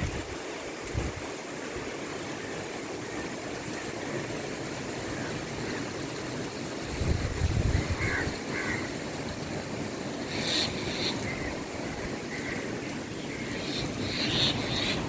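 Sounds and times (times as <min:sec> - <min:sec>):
wind buffeting microphone: 0:00.0 - 0:01.3, 0:06.8 - 0:08.5
water: 0:00.0 - 0:15.0
wind through palm trees: 0:00.0 - 0:15.0.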